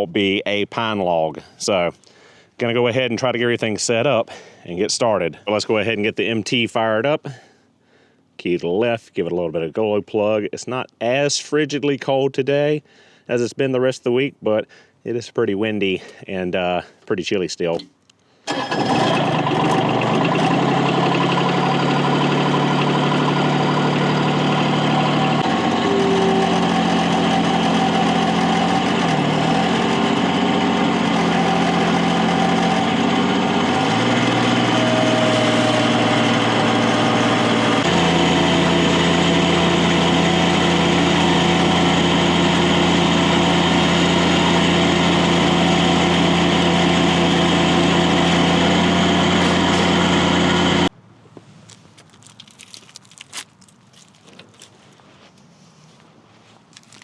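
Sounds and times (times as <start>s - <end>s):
diesel engine running: 18.5s - 50.9s.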